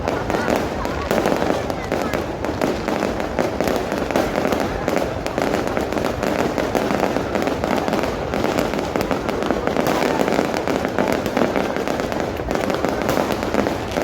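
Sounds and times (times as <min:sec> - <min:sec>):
fireworks bangs and crackles: 0:00.0 - 0:14.0.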